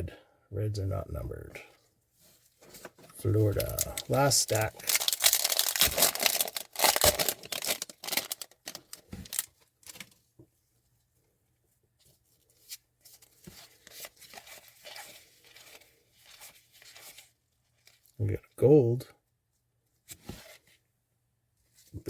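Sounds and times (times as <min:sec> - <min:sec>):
rustling of wrappers and cards: 0:02.2 - 0:10.3, 0:12.1 - 0:18.2
wrappers tearing and crinkling: 0:03.5 - 0:10.1.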